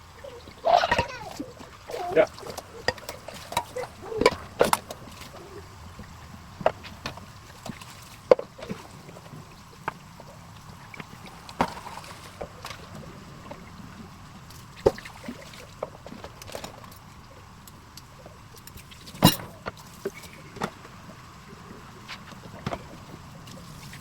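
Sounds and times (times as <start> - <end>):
steady hiss: 0.0 - 24.0
dishes and utensils clinking: 19.2 - 19.6.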